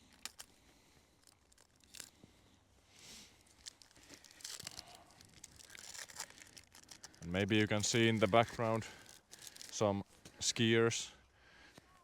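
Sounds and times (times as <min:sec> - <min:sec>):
foil wrapper tearing and crinkling: 0:00.0 - 0:00.5, 0:01.2 - 0:02.1, 0:03.4 - 0:09.8.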